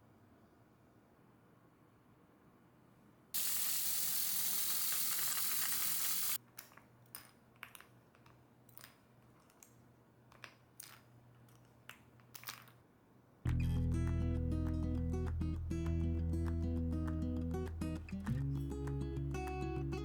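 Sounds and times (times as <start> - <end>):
loud steady hiss: 3.4 - 6.4.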